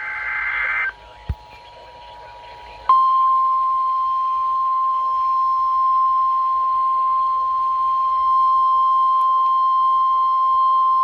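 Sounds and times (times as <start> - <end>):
steady warning alarm tone: 0.0 - 0.9.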